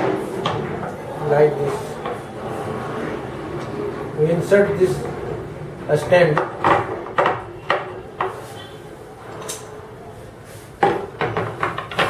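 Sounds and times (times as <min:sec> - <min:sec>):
stand knocking and clattering: 0:06.0 - 0:08.3, 0:10.8 - 0:12.0.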